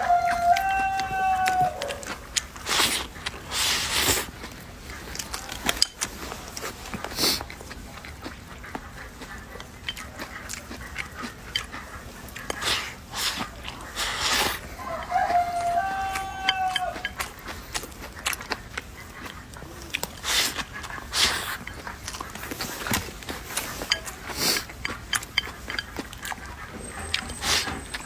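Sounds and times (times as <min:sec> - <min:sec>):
rooster crowing: 0:00.0 - 0:02.2, 0:14.7 - 0:17.2.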